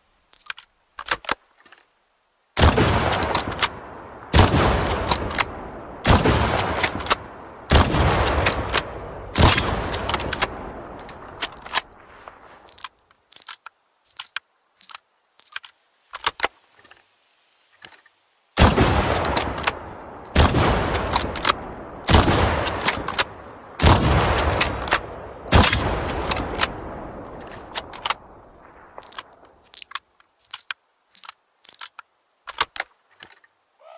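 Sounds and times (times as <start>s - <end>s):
rifle shots echoing: 2.6s - 12.1s, 18.6s - 29.4s
rifle action clicking: 24.4s - 28.2s, 29.0s - 33.5s.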